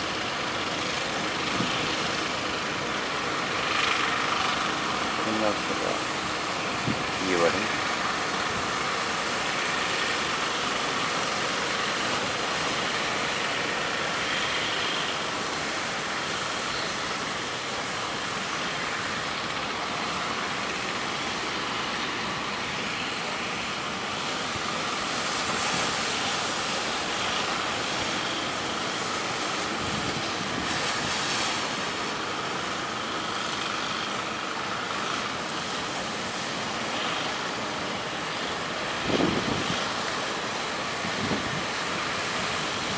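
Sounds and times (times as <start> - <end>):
strong wind: 6.0 - 11.2, 20.0 - 31.9, 37.9 - 42.9.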